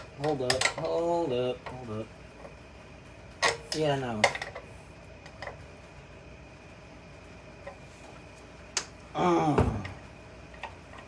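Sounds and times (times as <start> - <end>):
man groaning: 9.1 - 10.0.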